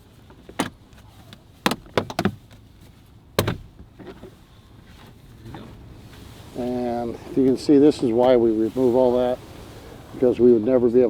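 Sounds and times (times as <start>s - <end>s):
plastic trim clicks and knocks: 1.6s - 2.4s.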